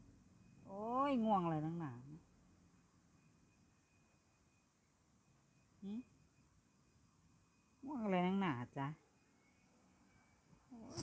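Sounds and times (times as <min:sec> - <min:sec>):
woman speaking: 0:00.7 - 0:02.2, 0:07.8 - 0:09.0.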